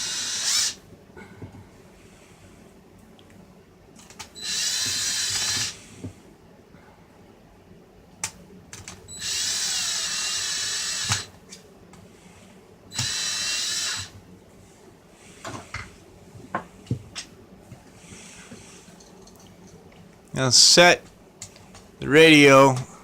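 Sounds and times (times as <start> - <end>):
cordless drill driving screws: 0.0 - 0.8, 4.4 - 5.8, 9.1 - 11.3, 12.9 - 14.1.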